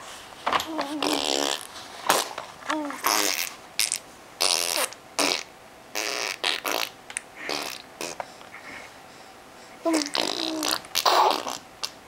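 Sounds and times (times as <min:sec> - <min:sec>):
baby blowing raspberries: 0:00.9 - 0:02.3, 0:02.9 - 0:08.8, 0:09.8 - 0:12.0.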